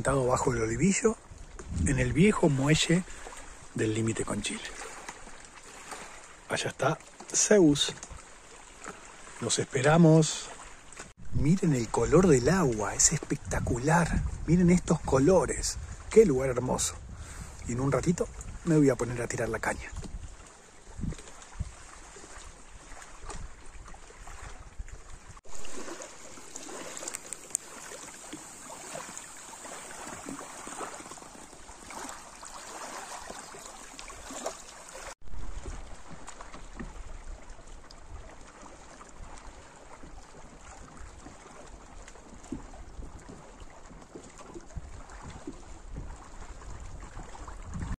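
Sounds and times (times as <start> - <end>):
wind rumbling on microphone: 0.0 - 4.4, 11.2 - 34.3, 35.2 - 48.0
lake water lapping: 0.0 - 48.0.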